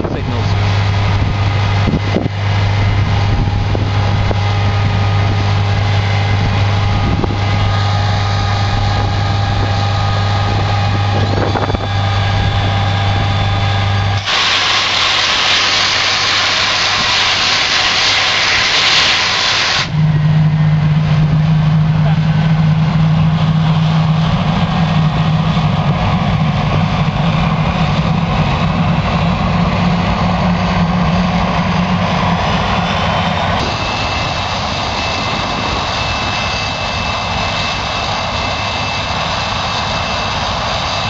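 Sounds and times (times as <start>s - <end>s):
piston engine droning in cabin: 0.0s - 41.0s
loud hiss: 14.2s - 20.0s.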